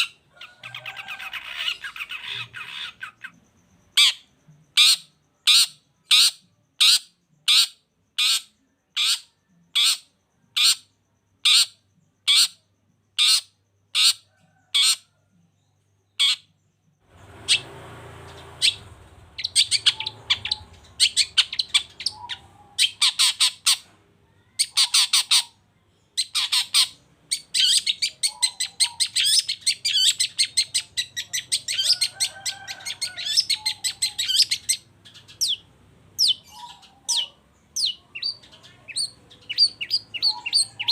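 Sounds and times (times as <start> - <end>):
bird chattering song: 0.0 - 40.9
bird harsh call: 17.4 - 25.6, 26.2 - 40.9.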